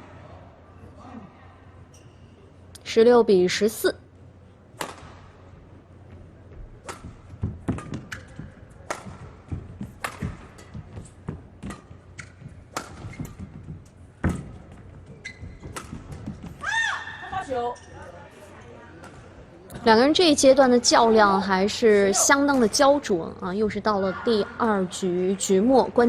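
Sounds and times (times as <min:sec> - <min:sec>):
racket striking shuttlecock: 0:04.8 - 0:05.3, 0:06.8 - 0:10.8, 0:11.6 - 0:13.6, 0:15.6 - 0:16.3
footfalls on court floor: 0:06.1 - 0:16.8
shoe squeaks: 0:13.0 - 0:13.6, 0:15.0 - 0:16.3.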